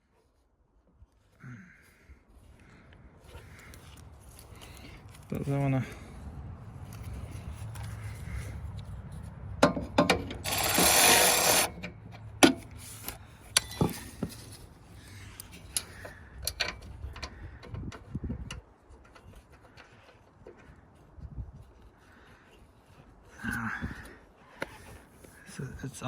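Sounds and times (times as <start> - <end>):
hand tools clicking on bolts: 9.6 - 14.4
rasping burst: 10.4 - 11.8.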